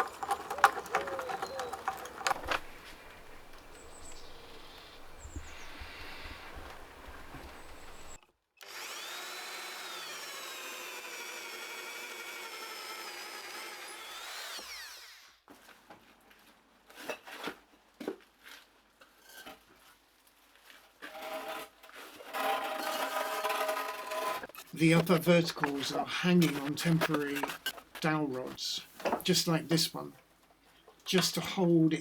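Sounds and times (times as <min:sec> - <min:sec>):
electric drill boring into wood: 0:00.0 - 0:15.4.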